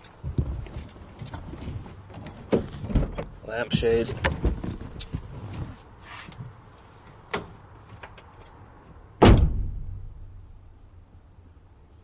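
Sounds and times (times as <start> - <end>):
short rustle: 4.1 - 8.6
loud thump: 9.2 - 10.4.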